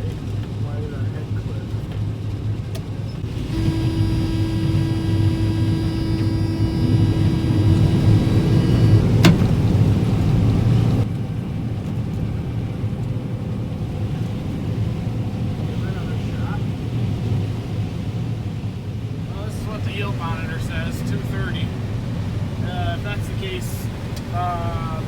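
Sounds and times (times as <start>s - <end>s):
combine harvester humming: 0.1s - 11.1s, 18.9s - 25.0s
steady whine: 3.0s - 11.1s, 18.9s - 25.0s.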